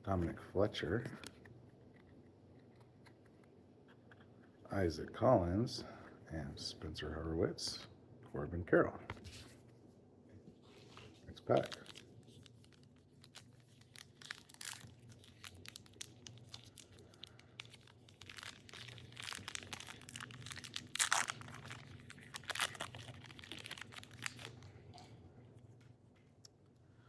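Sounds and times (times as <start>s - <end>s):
wrapper crinkling: 10.7s - 25.1s
wrapper tearing: 10.8s - 25.0s.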